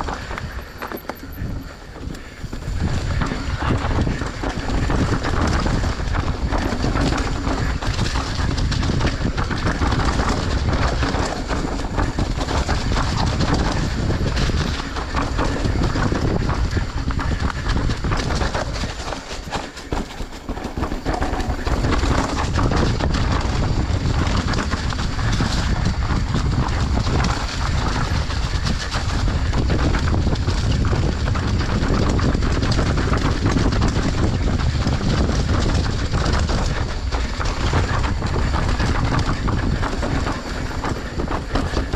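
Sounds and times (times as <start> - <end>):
dirt bike rattling over bumps: 0.0 - 41.9
wind noise on camera: 0.0 - 41.9
motorcycle engine: 19.0 - 22.8.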